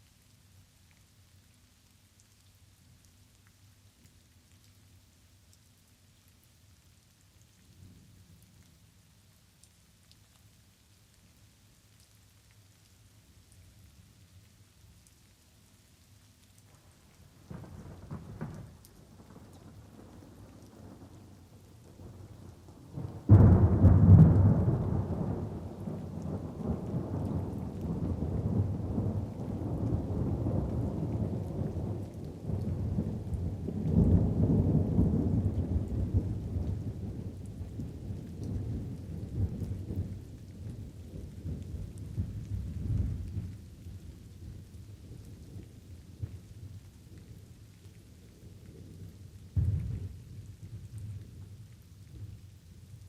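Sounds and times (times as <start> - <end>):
light rain falling: 0.0 - 53.0
thunder rumbling: 23.0 - 38.2.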